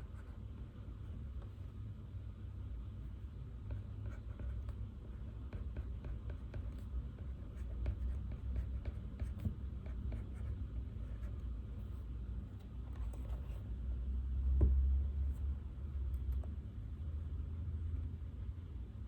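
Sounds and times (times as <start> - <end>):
steady low hum: 0.0 - 19.0
pen scratching on paper: 3.6 - 11.4.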